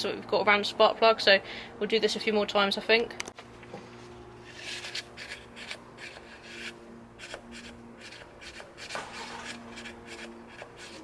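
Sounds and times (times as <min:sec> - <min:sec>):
tissue scraping in plug well: 0:03.9 - 0:11.0.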